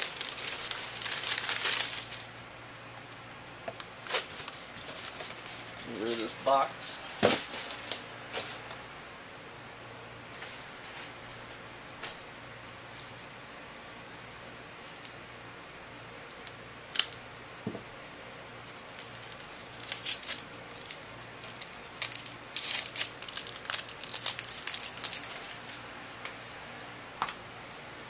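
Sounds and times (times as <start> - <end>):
packing material crinkling: 0.0 - 2.4, 3.8 - 6.4, 18.6 - 25.8.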